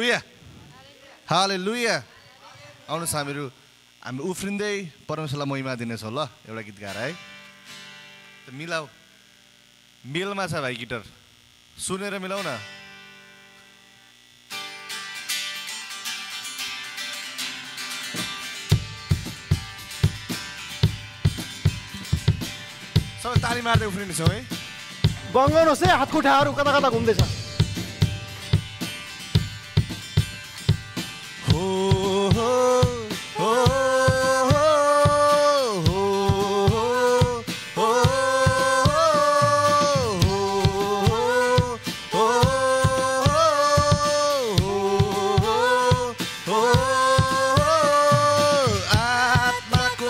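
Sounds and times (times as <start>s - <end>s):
guitar strummed in quick rhythm: 14.5s - 50.0s
kick drum on steady beat: 18.7s - 35.3s, 35.9s - 39.1s, 40.0s - 50.0s
person singing long notes: 31.4s - 50.0s.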